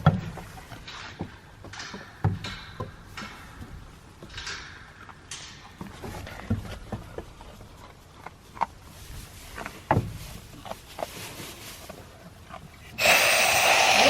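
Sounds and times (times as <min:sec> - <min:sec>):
animal chewing hay: 0:05.8 - 0:13.5.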